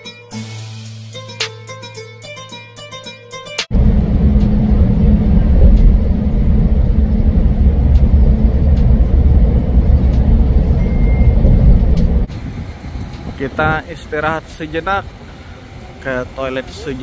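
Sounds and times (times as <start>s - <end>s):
road vehicle rumbling: 3.7s - 17.0s.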